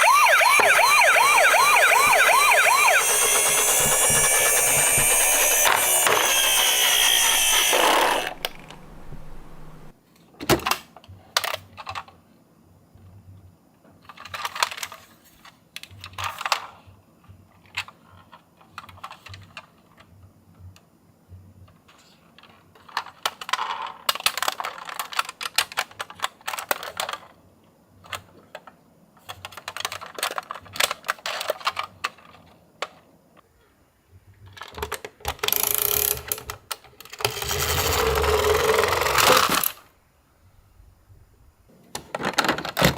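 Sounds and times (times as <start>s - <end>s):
toy cars clicking and rattling: 0.6s - 8.8s, 14.0s - 16.9s, 17.6s - 20.1s, 21.8s - 27.4s, 28.0s - 33.0s, 34.4s - 39.8s.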